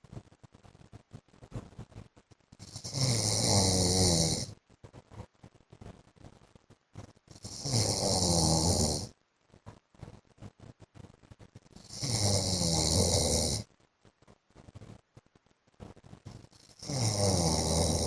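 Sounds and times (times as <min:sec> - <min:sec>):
man snoring: 0:02.6 - 0:04.5, 0:07.4 - 0:09.1, 0:11.8 - 0:13.7, 0:16.8 - 0:18.0.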